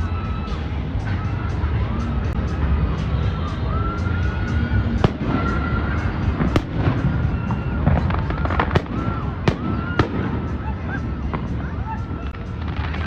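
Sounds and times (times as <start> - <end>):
fireworks bangs: 5.0 - 13.0.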